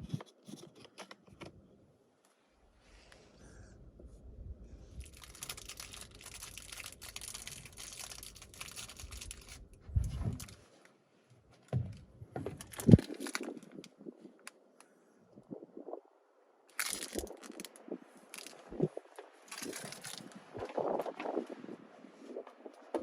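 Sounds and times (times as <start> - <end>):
crinkling rustling: 5.0 - 10.9, 11.5 - 14.6, 16.7 - 21.6.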